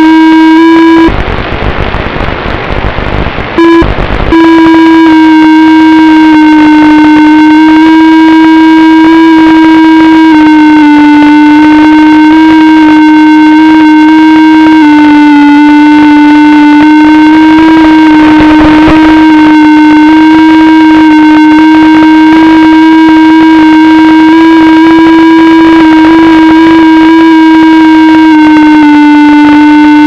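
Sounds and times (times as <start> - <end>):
electronic buzz: 0.0 - 30.0
hissing static: 0.0 - 30.0.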